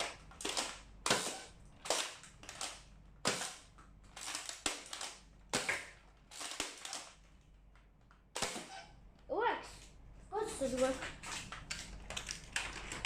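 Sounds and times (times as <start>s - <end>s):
toy blaster firing snaps: 0.0s - 7.1s, 8.3s - 8.7s.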